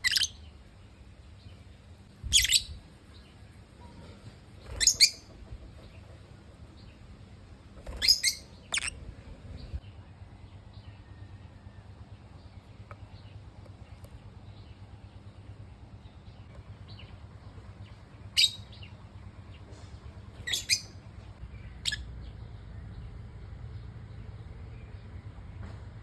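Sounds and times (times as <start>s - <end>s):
lovebirds chirping: 0.0s - 3.4s, 4.6s - 6.0s, 7.8s - 11.0s, 12.3s - 19.0s, 20.4s - 25.2s
steady low hum: 0.0s - 26.0s.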